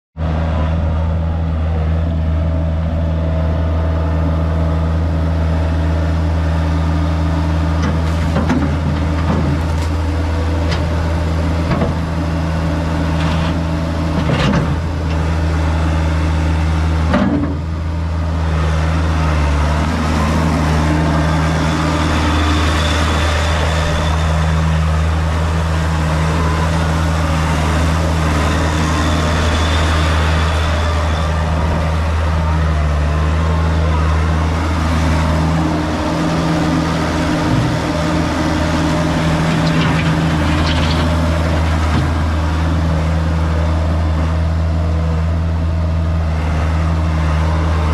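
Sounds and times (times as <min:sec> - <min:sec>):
skid steer engine running: 0:00.2 - 0:47.9.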